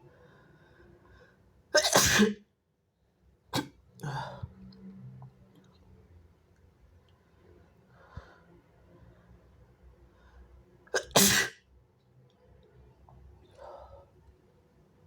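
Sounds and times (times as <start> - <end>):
person sneezing: 1.8 - 2.4, 11.0 - 11.6.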